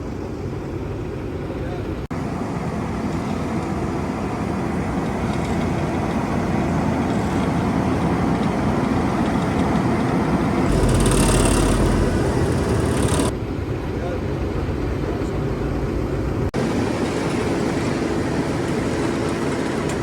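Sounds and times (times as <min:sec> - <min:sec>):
heavy machinery engines running: 0:02.1 - 0:13.4.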